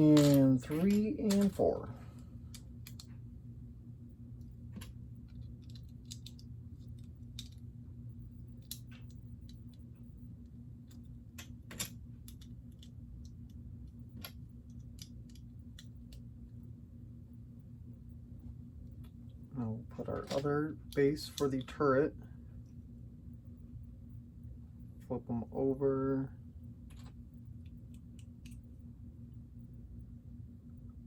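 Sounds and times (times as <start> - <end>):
low hum: 0.0 - 31.0
plastic pieces clicking together: 4.8 - 7.6.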